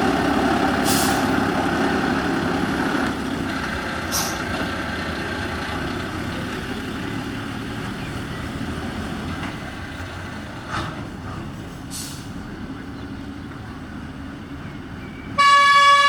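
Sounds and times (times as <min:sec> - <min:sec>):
bus diesel engine running: 0:00.0 - 0:16.0
air hiss: 0:00.8 - 0:01.3.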